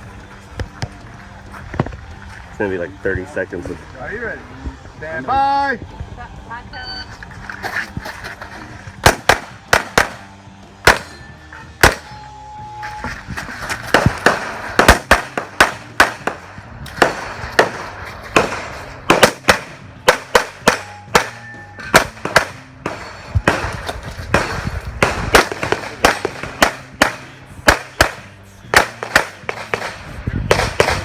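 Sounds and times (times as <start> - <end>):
rapid handgun fire: 9.0 - 11.1, 11.8 - 12.1, 13.9 - 21.4, 22.0 - 31.0.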